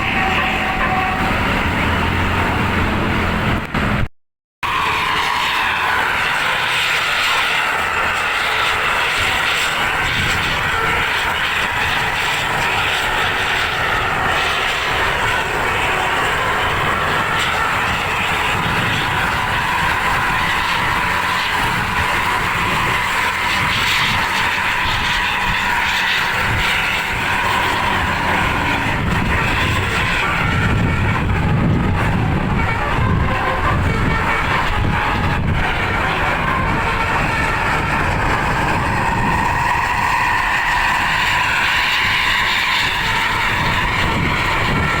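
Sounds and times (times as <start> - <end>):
bus engine and road noise: 0.0 - 45.0.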